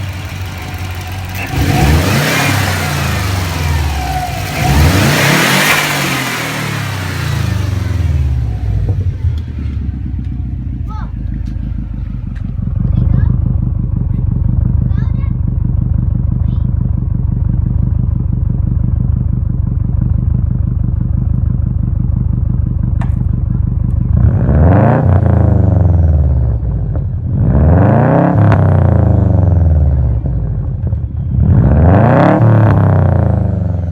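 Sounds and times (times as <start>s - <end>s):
engine revving: 0.0s - 15.1s, 24.0s - 33.9s
car engine idling: 0.0s - 33.9s.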